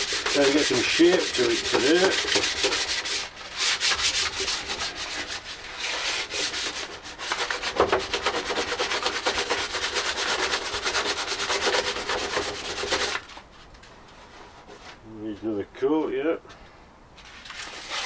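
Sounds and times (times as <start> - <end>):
sandpaper rubbing on filler: 0.0 - 13.3, 17.3 - 18.0.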